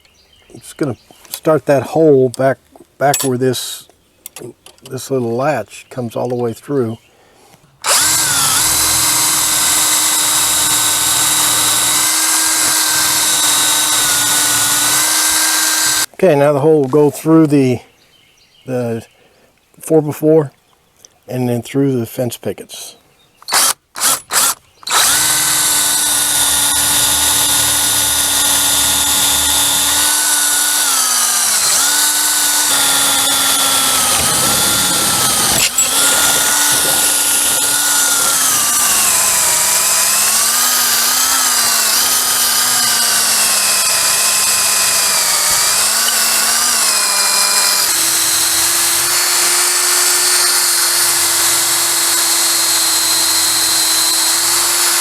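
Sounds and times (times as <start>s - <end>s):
electric drill boring through wood: 7.8s - 16.1s, 23.5s - 55.0s.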